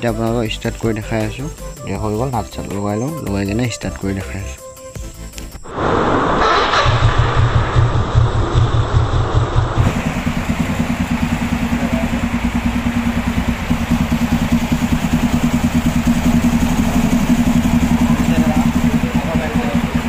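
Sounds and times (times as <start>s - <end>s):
scooter engine idling: 6.4s - 20.0s.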